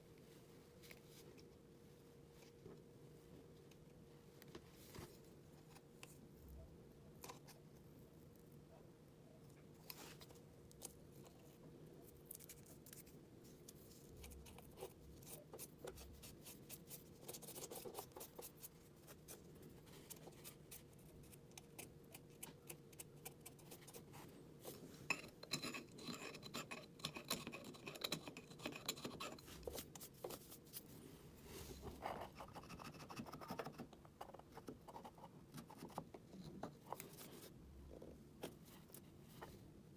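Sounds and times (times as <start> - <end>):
hand tool scraping filler: 25.4 - 29.8.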